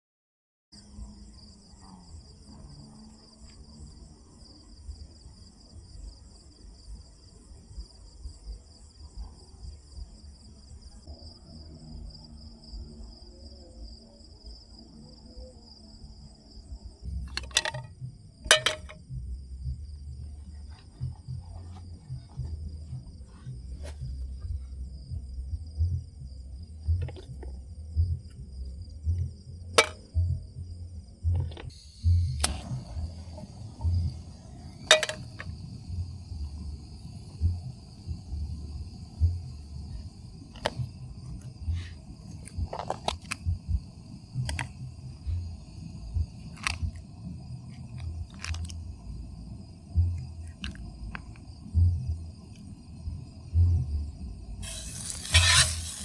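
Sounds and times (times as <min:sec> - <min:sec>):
insects trilling: 0:09.6 - 0:56.0
low rumble: 0:17.0 - 0:54.7.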